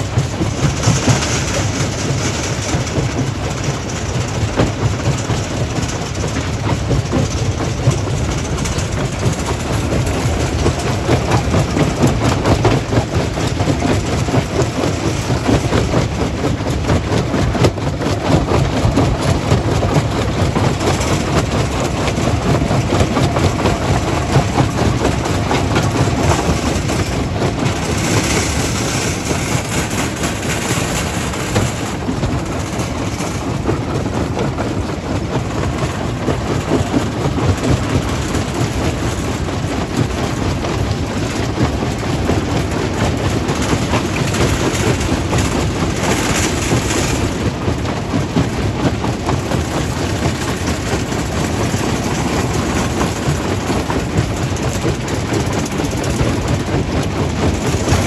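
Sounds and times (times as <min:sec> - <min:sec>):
stone crusher rumbling and rattling: 0:00.0 - 0:58.0.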